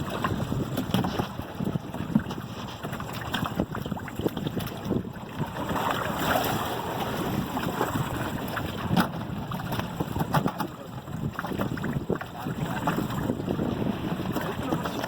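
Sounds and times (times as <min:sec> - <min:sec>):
knocks and clatters on boat: 0:00.0 - 0:15.0
sea water washing around boat: 0:00.0 - 0:15.0
wind buffeting microphone: 0:00.0 - 0:15.0.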